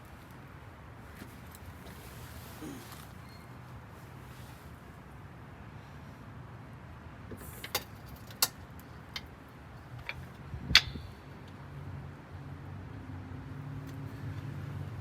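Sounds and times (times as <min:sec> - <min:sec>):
sharp metallic clicks and knocks: 0:07.3 - 0:11.6.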